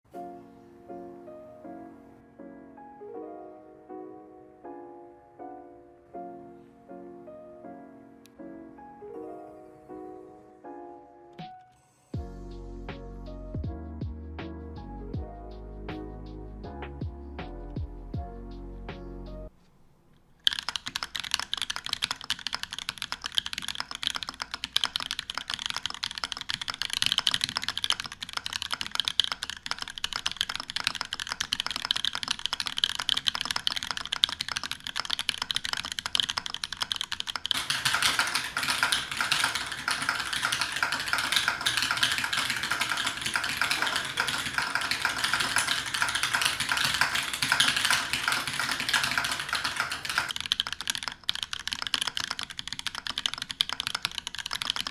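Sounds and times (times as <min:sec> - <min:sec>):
fast typing on mechanical keyboard: 0:20.4 - 0:54.9.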